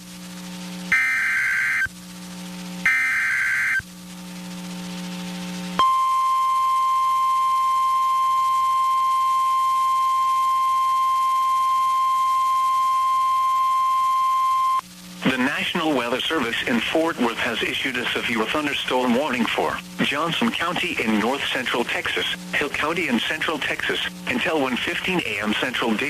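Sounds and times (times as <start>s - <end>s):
buzzy digital data burst: 0.0s - 26.0s
steady single-pitch alarm tone: 0.9s - 2.0s, 2.8s - 3.9s, 5.8s - 14.8s.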